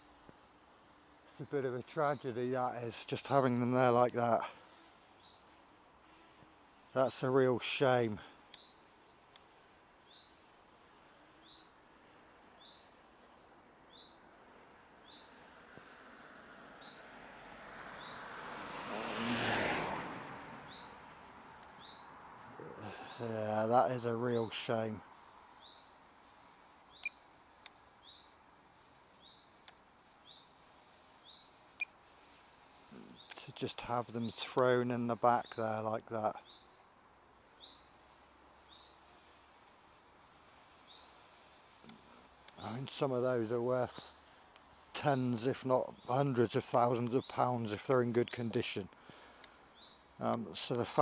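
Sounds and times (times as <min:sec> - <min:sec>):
bird chirping: 0:00.0 - 0:00.7, 0:05.2 - 0:05.6, 0:08.5 - 0:10.4, 0:11.4 - 0:11.8, 0:12.5 - 0:14.3, 0:15.0 - 0:15.4, 0:16.8 - 0:17.1, 0:18.0 - 0:18.3, 0:20.7 - 0:21.0, 0:21.6 - 0:23.6, 0:25.6 - 0:26.0, 0:26.8 - 0:28.4, 0:29.2 - 0:30.6, 0:31.2 - 0:34.5, 0:36.2 - 0:36.9, 0:37.5 - 0:39.4, 0:40.8 - 0:43.0, 0:49.1 - 0:50.4
background hiss: 0:00.0 - 0:51.0
small sharp clicks: 0:08.5 - 0:08.7, 0:09.3 - 0:09.5, 0:27.0 - 0:27.8, 0:29.6 - 0:29.8, 0:44.5 - 0:44.7, 0:48.2 - 0:49.6
bird chirping faintly: 0:24.2 - 0:34.4.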